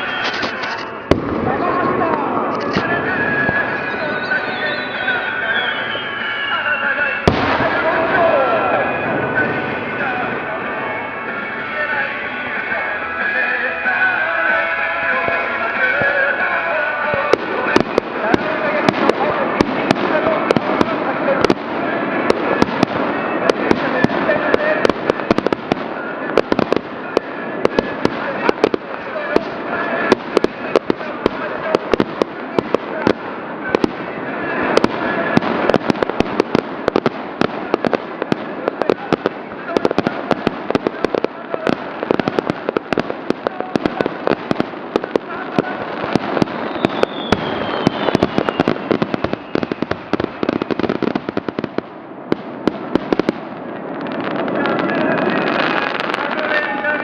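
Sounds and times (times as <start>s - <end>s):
fireworks bangs and pops: 0.0s - 57.0s
fireworks crackling: 0.0s - 57.0s
faint falling whistle: 3.7s - 7.2s.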